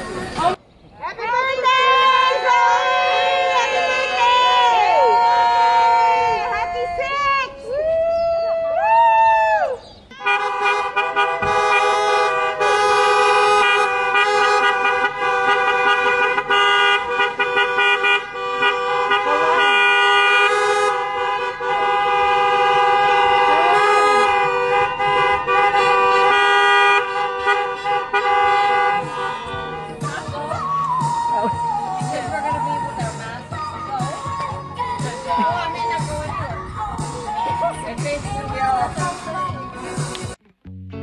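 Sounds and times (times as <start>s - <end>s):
car horns honking: 10.1s - 36.2s.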